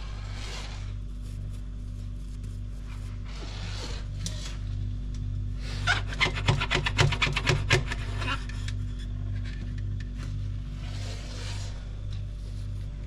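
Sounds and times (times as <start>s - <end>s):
quick rubbing scraping strokes: 0.0s - 4.6s, 10.8s - 12.0s
steady low hum: 0.0s - 13.0s.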